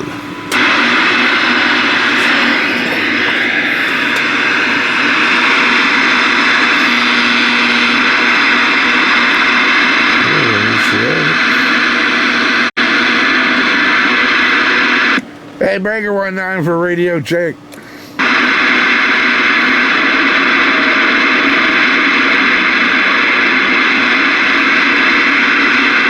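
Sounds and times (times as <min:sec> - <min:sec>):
radio static hissing: 0:00.0 - 0:15.8, 0:18.2 - 0:26.0
faint voice on radio: 0:00.6 - 0:05.4, 0:10.1 - 0:12.1.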